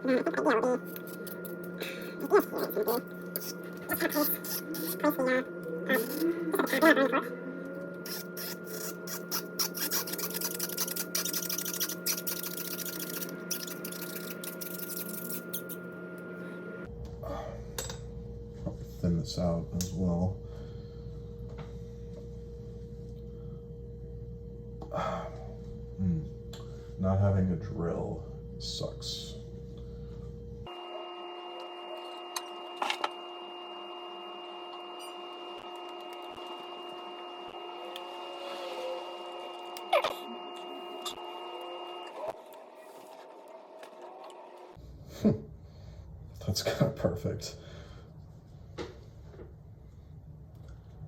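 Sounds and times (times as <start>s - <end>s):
steady hum: 0.0s - 51.0s
cork squeaking against metal opener: 8.0s - 15.8s.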